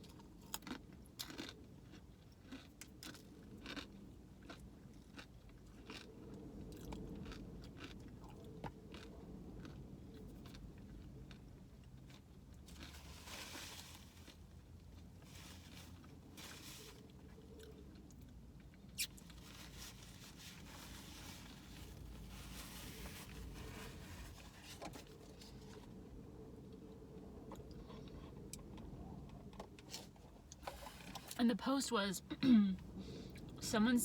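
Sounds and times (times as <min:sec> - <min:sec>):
person chewing food: 0:00.0 - 0:15.2, 0:16.9 - 0:19.4.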